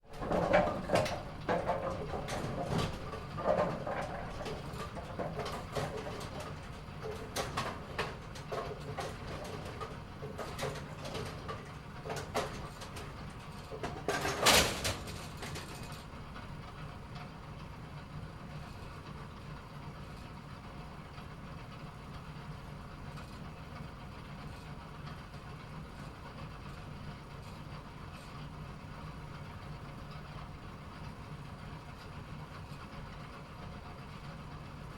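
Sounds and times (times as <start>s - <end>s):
steady mechanical hum: 0.0s - 34.9s
loud mechanical clunk: 0.1s - 16.0s
pins and machinery clattering: 0.1s - 16.1s.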